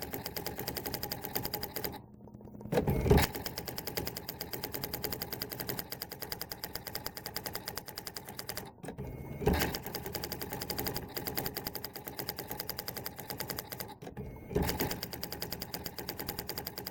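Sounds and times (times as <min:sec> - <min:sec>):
typewriter typing strikes: 0:14.6 - 0:16.9.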